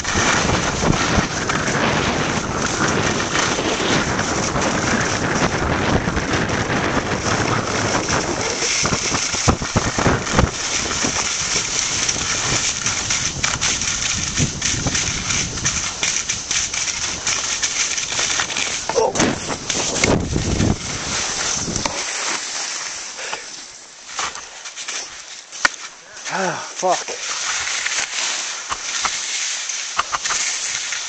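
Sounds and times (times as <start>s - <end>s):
wind rushing over microphone: 0.0s - 22.1s
skis scraping on snow: 0.0s - 31.0s.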